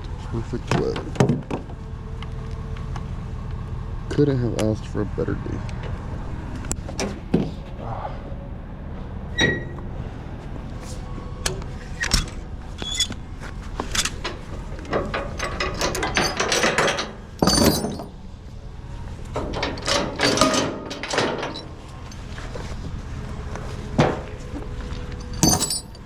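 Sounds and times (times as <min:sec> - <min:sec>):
metal clanks: 0:11.4 - 0:18.2, 0:19.3 - 0:22.7, 0:25.1 - 0:26.0.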